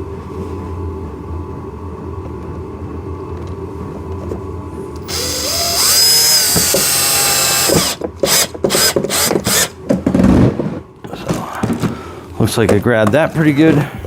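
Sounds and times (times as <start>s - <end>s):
power drill driving a screw: 5.1s - 9.7s.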